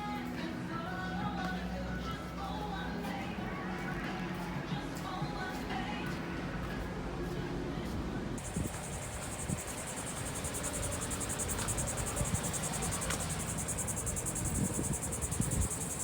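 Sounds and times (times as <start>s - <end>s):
crickets trilling: 8.4s - 16.0s.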